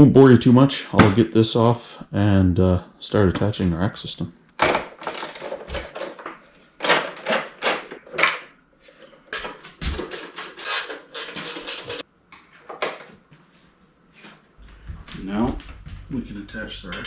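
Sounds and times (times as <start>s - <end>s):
tools and metal parts clinking: 4.7s - 8.4s, 9.3s - 12.0s.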